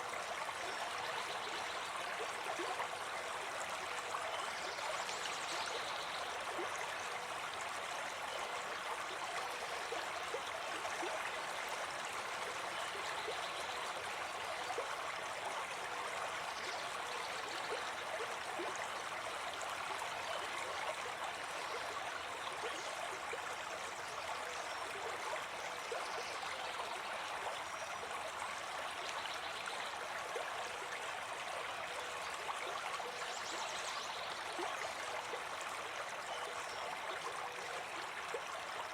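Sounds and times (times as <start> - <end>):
forest stream flowing: 0.0 - 38.9.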